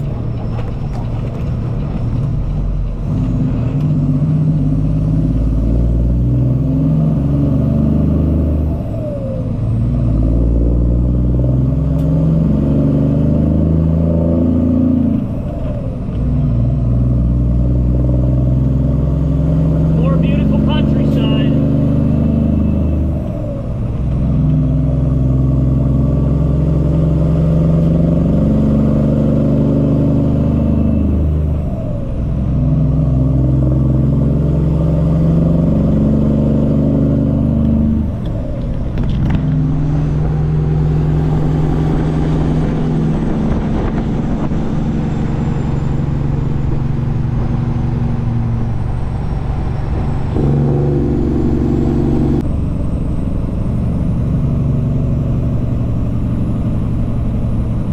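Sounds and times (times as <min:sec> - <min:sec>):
diesel truck engine running: 0:00.0 - 0:57.9.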